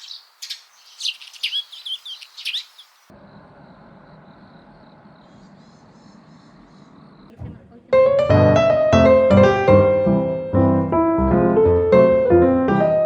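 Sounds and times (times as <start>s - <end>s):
small birds chirping: 0.0s - 7.3s
steady outdoor hum: 0.0s - 8.0s.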